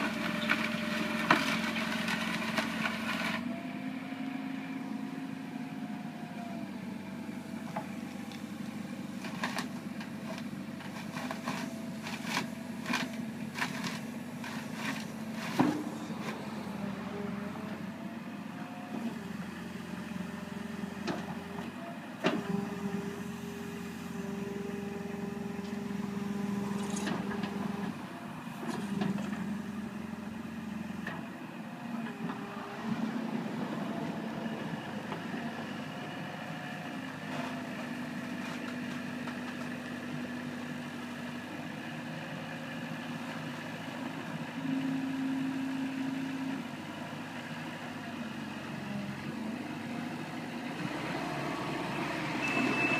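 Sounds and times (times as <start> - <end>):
excavator diesel engine running: 0.0 - 52.9
hydraulic whines: 51.9 - 52.9.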